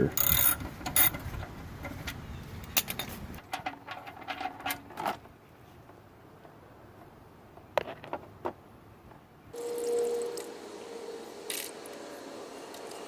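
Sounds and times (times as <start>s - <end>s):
wrench clicking and scraping: 0.1s - 4.8s.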